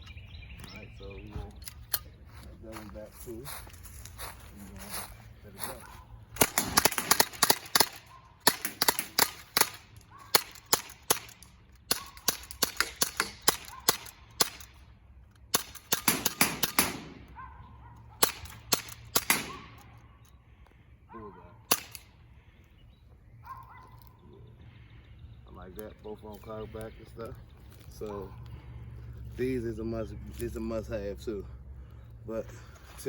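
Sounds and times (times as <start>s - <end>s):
bb pistols firing: 6.3s - 14.9s, 15.5s - 17.4s, 18.2s - 20.0s, 21.7s - 22.2s.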